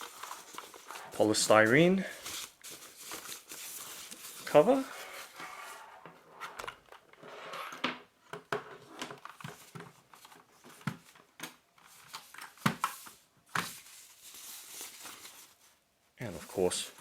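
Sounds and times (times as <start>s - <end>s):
polystyrene foam scraping and squeaking: 0.0s - 6.0s.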